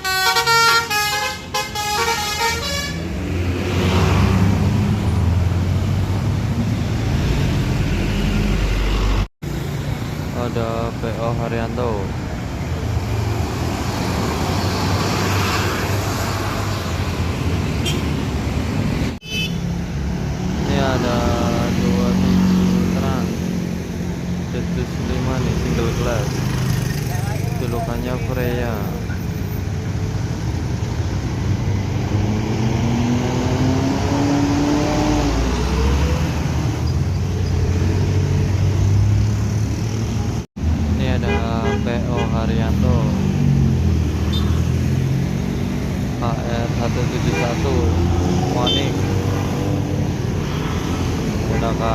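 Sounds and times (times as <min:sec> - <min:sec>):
bus diesel engine rumble: 0:00.0 - 0:03.2, 0:03.8 - 0:19.4
road and traffic noise: 0:00.0 - 0:51.9.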